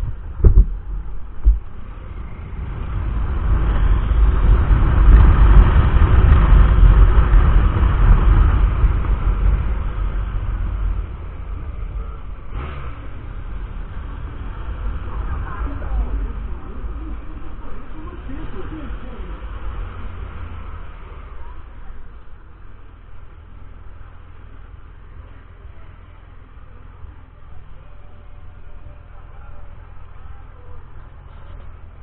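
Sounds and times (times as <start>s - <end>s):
sharp thumps: 0.0s - 1.8s
wind buffeting microphone: 0.0s - 20.8s
motorcycle riding: 0.0s - 32.0s.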